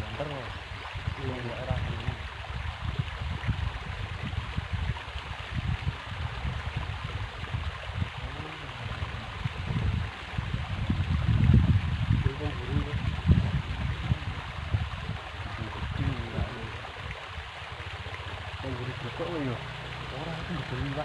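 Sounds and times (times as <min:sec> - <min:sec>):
river water rushing: 0:13.9 - 0:21.0.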